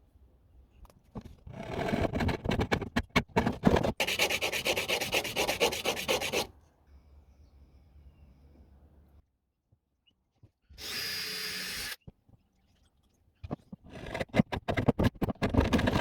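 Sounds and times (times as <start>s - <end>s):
sanding strokes: 4.0s - 6.5s.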